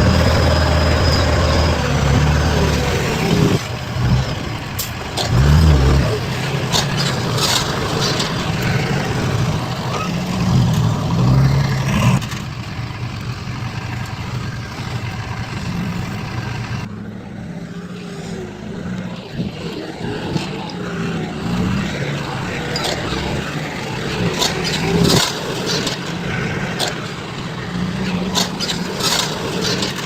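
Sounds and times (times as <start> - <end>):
construction machinery engines running: 0.0 - 30.0.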